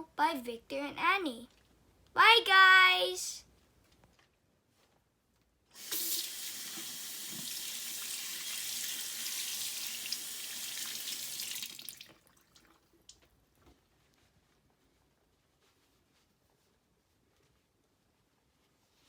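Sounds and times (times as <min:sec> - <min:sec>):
tap water running into sink: 0:05.8 - 0:12.8.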